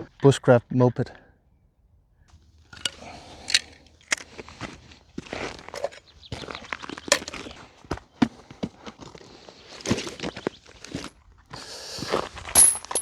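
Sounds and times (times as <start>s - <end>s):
camping gear clicking and knocking: 2.7s - 4.4s, 5.6s - 7.5s, 12.6s - 13.0s.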